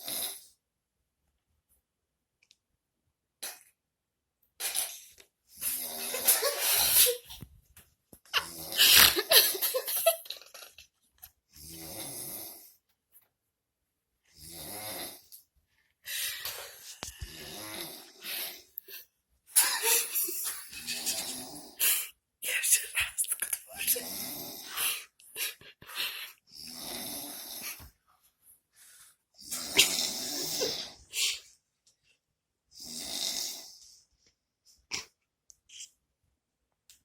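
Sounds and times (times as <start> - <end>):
man snoring: 0.0 - 0.5, 5.6 - 6.8, 8.4 - 9.3, 11.6 - 12.8, 14.3 - 15.3, 17.3 - 18.7, 20.7 - 21.8, 23.9 - 25.0, 26.5 - 27.8, 29.4 - 31.0, 32.8 - 33.8.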